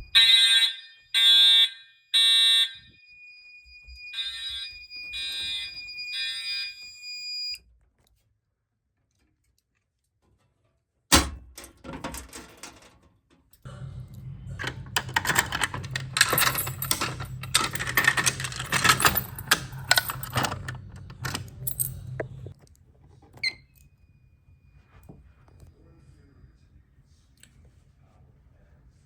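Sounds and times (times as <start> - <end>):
metallic clicking and rattling: 11.1 - 13.1, 14.6 - 22.6
steady low hum: 13.7 - 22.6.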